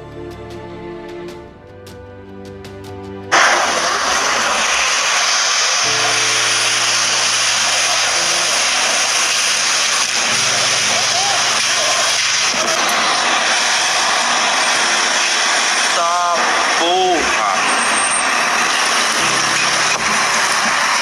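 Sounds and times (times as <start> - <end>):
music: 0.0 - 4.4, 5.8 - 12.9, 19.1 - 21.0
rain: 3.3 - 21.0.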